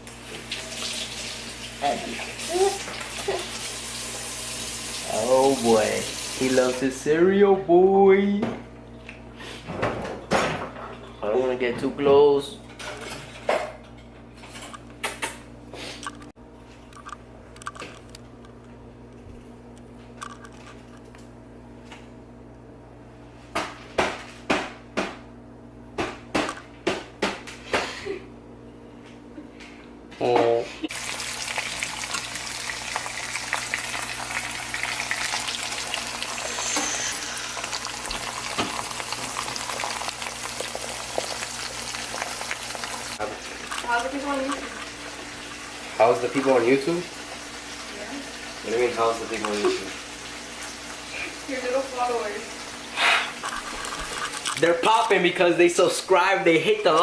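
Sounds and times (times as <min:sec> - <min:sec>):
meat sizzling in hot oil: 0:00.0 - 0:06.8, 0:30.9 - 0:54.4.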